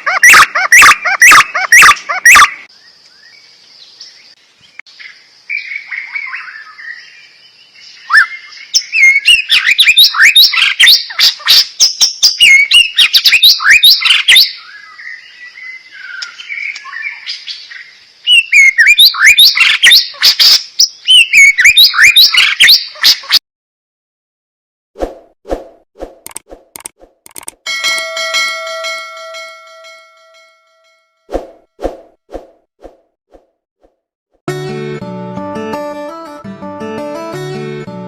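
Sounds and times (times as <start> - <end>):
songbird singing: 0.0 - 23.3.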